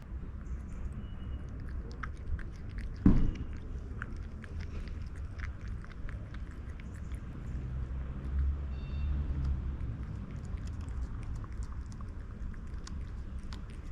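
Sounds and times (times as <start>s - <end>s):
cat chewing and crunching food: 0.0s - 13.9s
low background rumble: 0.0s - 13.9s
thump: 3.0s - 3.5s.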